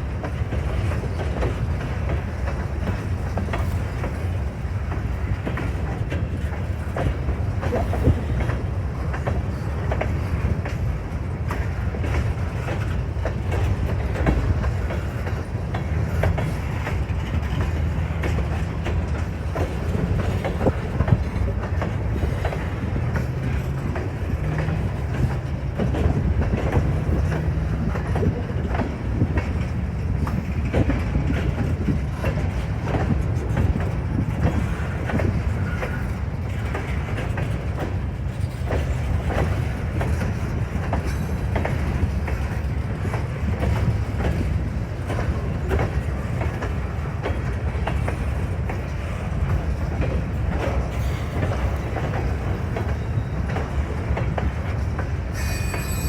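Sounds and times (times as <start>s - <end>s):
freight train rumbling past: 0.0s - 56.0s
wheels clicking over rail joints: 0.0s - 56.0s.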